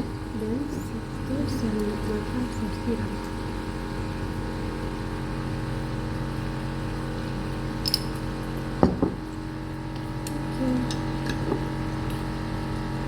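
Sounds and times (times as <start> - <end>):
machine hum: 0.0 - 13.0.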